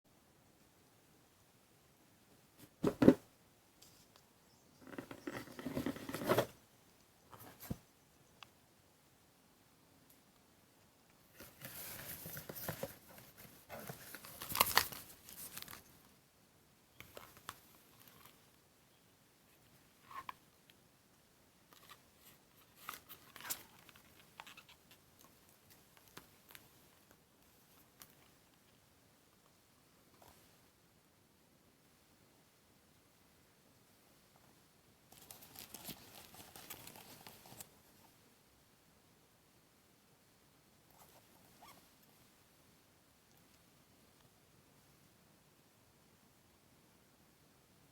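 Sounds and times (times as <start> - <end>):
packaging rustling: 11.4 - 15.9, 35.2 - 37.7.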